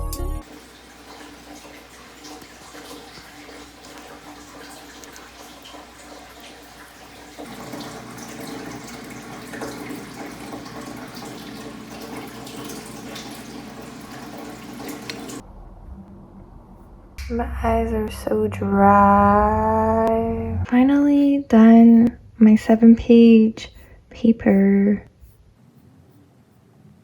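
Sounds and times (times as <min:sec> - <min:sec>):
tap water running into sink: 0:00.4 - 0:15.4.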